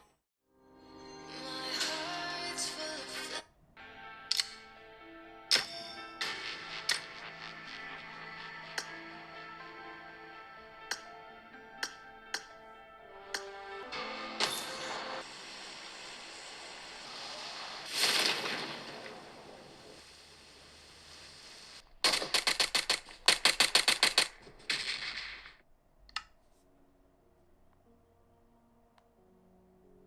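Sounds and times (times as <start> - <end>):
rapid clicking: 22.0 - 25.6.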